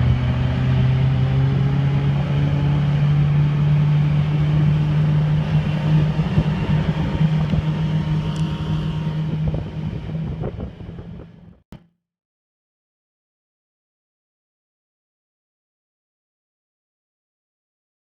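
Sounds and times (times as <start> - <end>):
outboard motor humming: 0.0 - 11.6
wind: 0.0 - 11.6.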